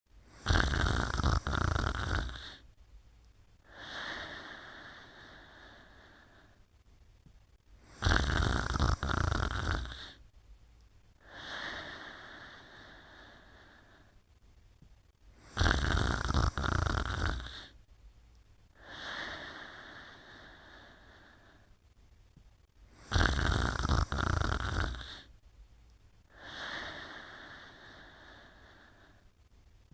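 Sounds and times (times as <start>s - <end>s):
person snoring: 0.2s - 2.7s, 3.6s - 6.6s, 7.8s - 10.2s, 11.2s - 14.1s, 15.4s - 17.8s, 18.8s - 21.7s, 22.9s - 25.3s, 26.3s - 29.2s.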